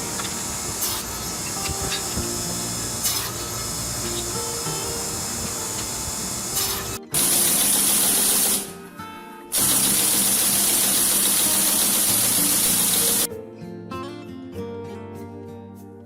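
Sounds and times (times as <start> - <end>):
loud hissing spray: 0.0 - 8.8, 9.6 - 13.3
background music: 0.0 - 16.0.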